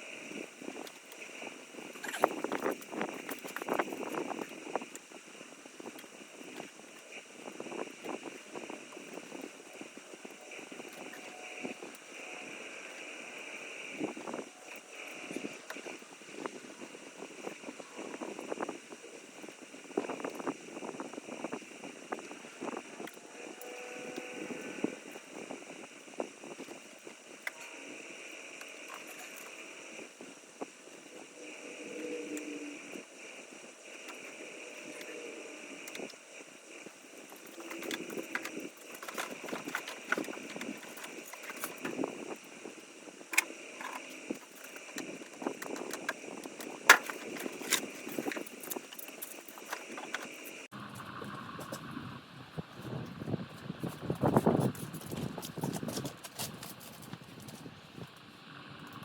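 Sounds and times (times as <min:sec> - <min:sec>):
steady background hiss: 0:00.0 - 0:51.5
hand tools clicking and knocking: 0:37.3 - 0:42.1, 0:43.3 - 0:50.5.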